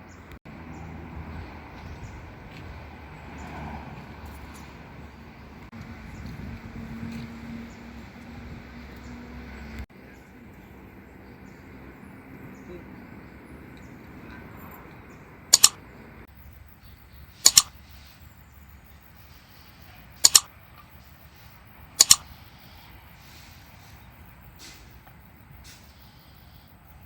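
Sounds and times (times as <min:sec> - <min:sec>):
sharp double clicks: 0:15.5 - 0:15.8, 0:17.4 - 0:17.7, 0:20.2 - 0:20.5, 0:22.0 - 0:22.4.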